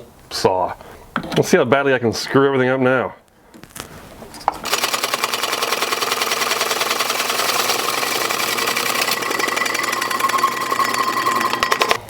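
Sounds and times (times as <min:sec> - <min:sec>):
hole saw teeth chattering: 0:04.6 - 0:12.0
drill motor whine: 0:04.7 - 0:12.0.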